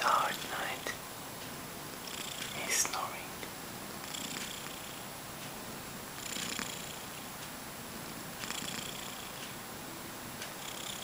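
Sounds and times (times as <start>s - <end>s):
cat snoring: 2.1s - 2.6s, 4.0s - 5.1s, 6.2s - 7.2s, 8.4s - 9.4s, 10.6s - 11.0s.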